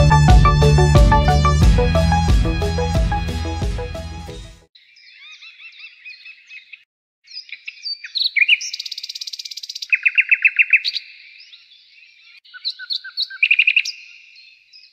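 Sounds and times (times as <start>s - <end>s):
songbirds singing: 4.8s - 14.9s.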